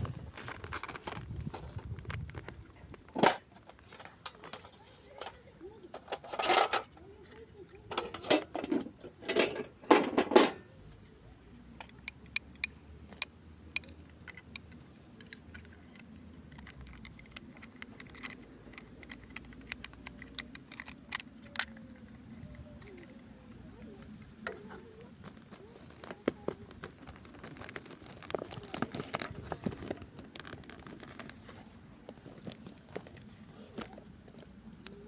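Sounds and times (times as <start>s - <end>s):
packaging crinkling: 0.0s - 3.1s, 24.6s - 34.6s
plastic toy pieces clicking: 11.7s - 31.4s.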